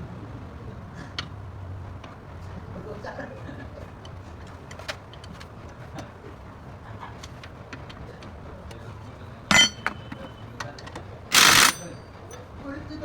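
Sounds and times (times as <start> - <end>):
loud metal clank ringing: 9.5 - 10.4, 11.3 - 12.0
metallic clicks of tools: 9.5 - 12.0.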